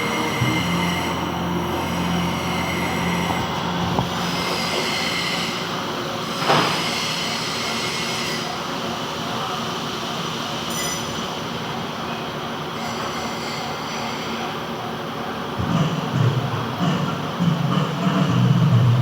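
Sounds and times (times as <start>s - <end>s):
lathe cutting noise: 0.0s - 9.2s
metal lathe humming and whining: 0.0s - 15.0s.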